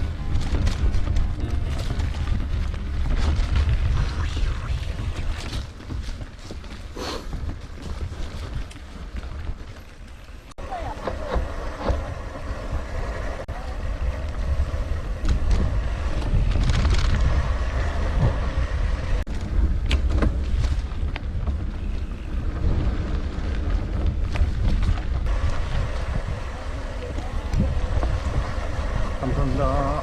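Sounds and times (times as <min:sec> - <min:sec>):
wind rumble on microphone: 0:00.0 - 0:30.0
bike rattling clicks and knocks: 0:05.8 - 0:12.8, 0:19.3 - 0:26.5.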